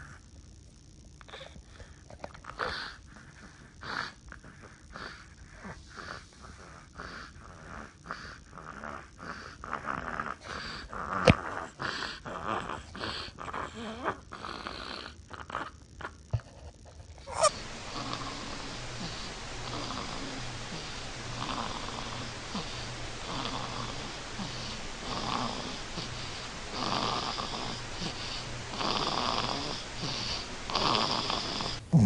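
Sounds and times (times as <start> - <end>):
person snoring: 17.3 - 32.0.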